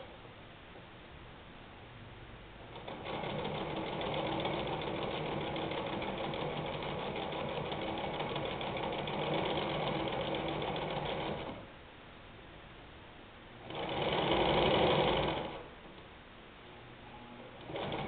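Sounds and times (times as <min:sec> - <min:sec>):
sewing machine stitching clatter: 0:02.7 - 0:11.6, 0:13.6 - 0:15.7, 0:17.6 - 0:18.0.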